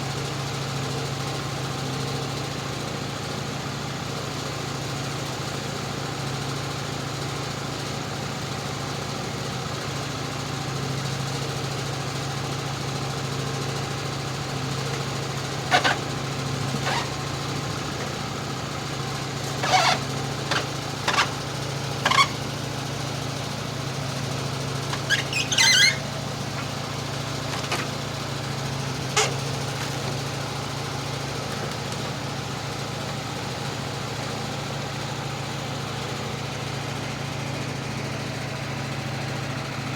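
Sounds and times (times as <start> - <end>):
small engine idling: 0.0 - 39.9.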